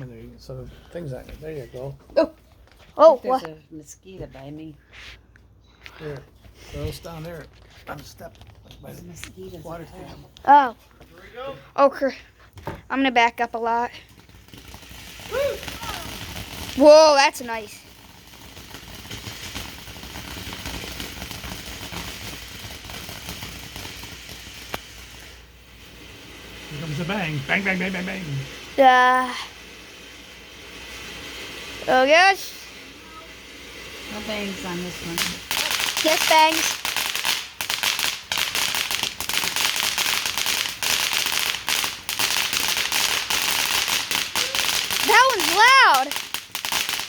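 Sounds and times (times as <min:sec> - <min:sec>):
firework fountain hissing and crackling: 0:00.0 - 0:05.1, 0:05.9 - 0:47.0
sharp firework pop: 0:24.3 - 0:25.3.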